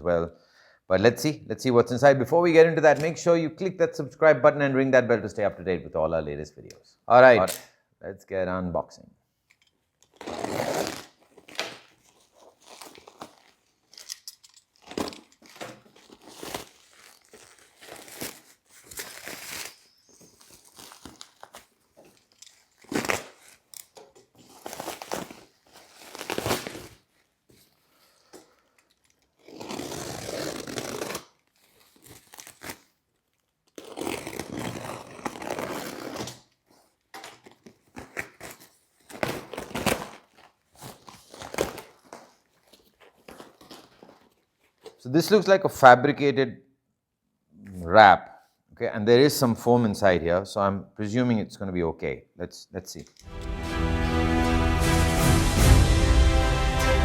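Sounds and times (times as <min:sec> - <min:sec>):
cardboard wrapping tearing: 0:10.1 - 0:14.0, 0:14.7 - 0:27.1, 0:29.3 - 0:45.0
bubble wrap crinkling: 0:10.1 - 0:27.4, 0:29.3 - 0:45.0.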